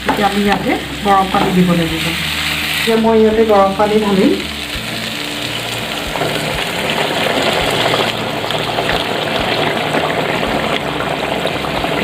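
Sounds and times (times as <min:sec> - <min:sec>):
water pouring into frying pan: 0:04.7 - 0:12.0.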